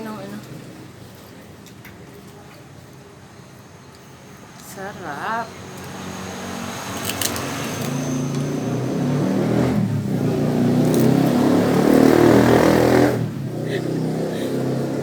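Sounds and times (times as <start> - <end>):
vehicle engine revving: 5.5 - 15.0.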